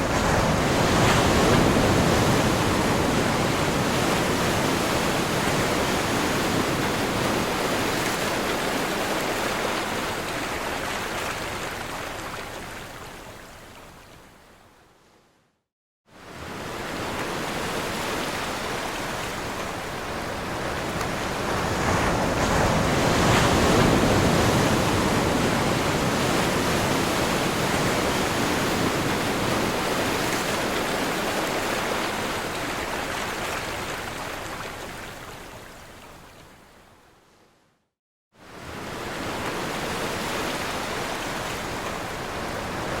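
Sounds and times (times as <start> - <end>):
ocean surf breaking on shore: 0.0 - 12.4, 16.2 - 35.2, 38.4 - 43.0.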